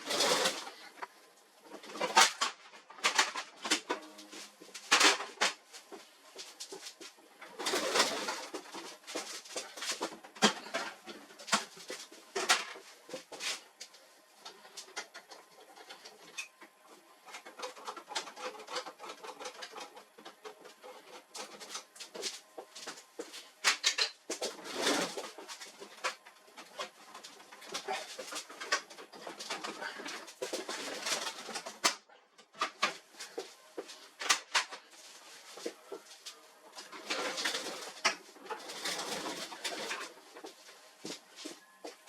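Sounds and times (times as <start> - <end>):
printer parts clicking and rattling: 1.7 - 5.6, 6.4 - 12.9, 14.5 - 23.0, 23.6 - 33.0.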